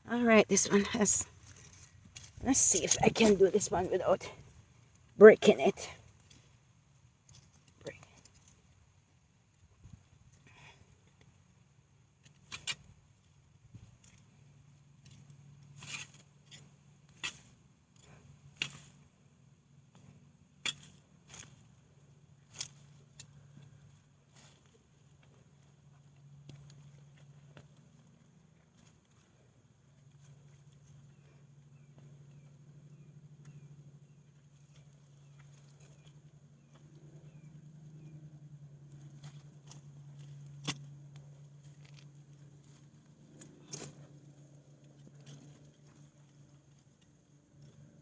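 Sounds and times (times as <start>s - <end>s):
faint low hum: 0.0s - 48.0s
digging scrapes in soil: 0.5s - 4.0s, 15.0s - 19.1s, 20.2s - 21.8s, 39.1s - 47.0s.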